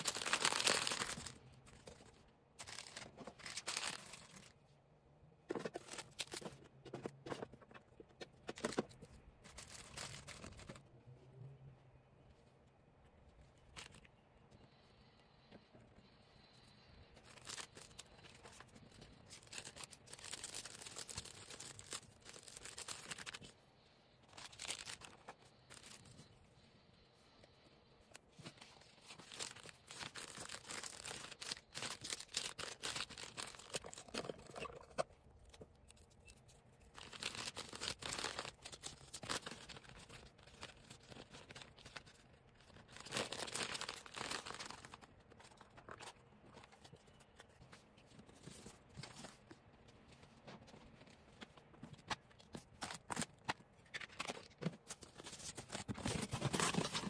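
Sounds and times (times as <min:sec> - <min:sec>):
plastic packaging rustling and tearing: 0:00.0 - 0:04.6, 0:05.5 - 0:07.8, 0:08.4 - 0:10.9, 0:17.2 - 0:23.6, 0:24.2 - 0:26.3, 0:28.3 - 0:47.3, 0:51.0 - 0:57.0.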